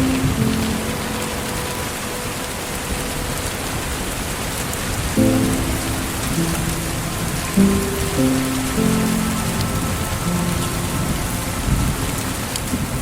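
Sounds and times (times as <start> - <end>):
steady rain falling: 0.0 - 13.0
lofi music with soft chords: 5.2 - 12.9.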